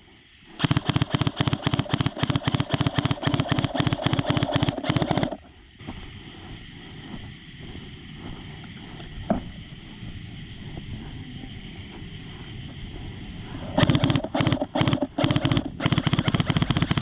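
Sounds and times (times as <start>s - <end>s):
steady outdoor hiss: 0.0s - 17.0s
rapid string of sharp cracks: 0.6s - 5.4s, 13.8s - 17.0s.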